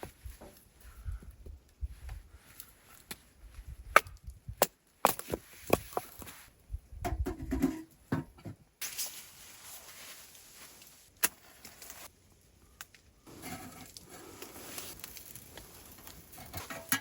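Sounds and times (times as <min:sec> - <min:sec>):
firewood snapping and knocking: 0:03.9 - 0:06.2.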